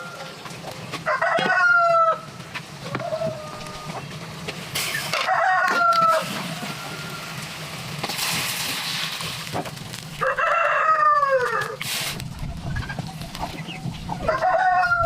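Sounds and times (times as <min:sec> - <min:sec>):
rooster crowing: 0:01.0 - 0:02.3, 0:05.1 - 0:07.3, 0:10.2 - 0:11.8, 0:14.2 - 0:15.0
rustling noise: 0:11.2 - 0:15.0.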